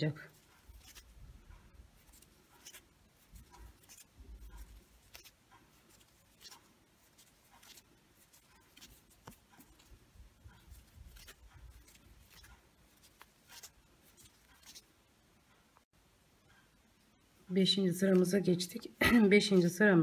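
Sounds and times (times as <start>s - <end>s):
crochet hook scratching yarn: 0.0s - 15.8s.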